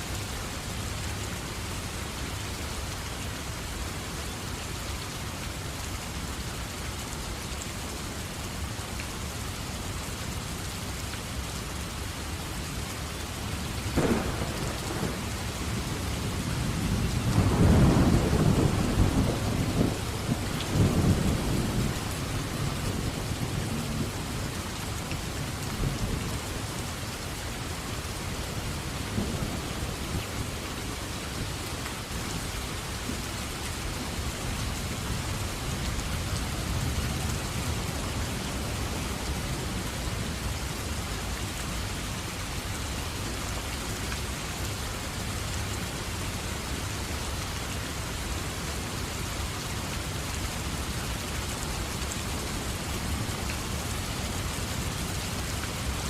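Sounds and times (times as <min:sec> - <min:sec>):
heavy rain: 0:00.0 - 0:56.0
thunder crack: 0:14.0 - 0:15.3
rumbling thunder: 0:14.0 - 0:22.3.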